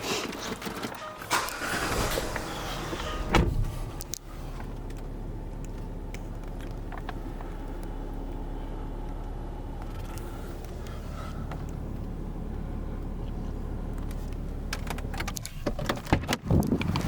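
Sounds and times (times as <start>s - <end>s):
car engine idling: 1.2s - 17.0s
loud thump: 3.0s - 3.9s.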